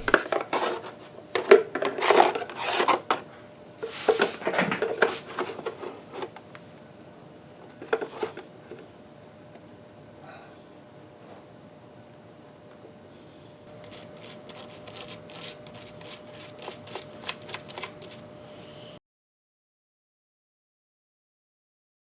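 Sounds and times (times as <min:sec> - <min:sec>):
scraping grease and metal chips: 0:13.7 - 0:18.2.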